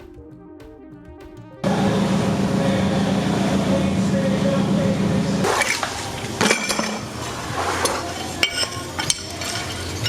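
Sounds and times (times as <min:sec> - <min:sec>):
metal parts and tools clinking: 0:05.5 - 0:10.0.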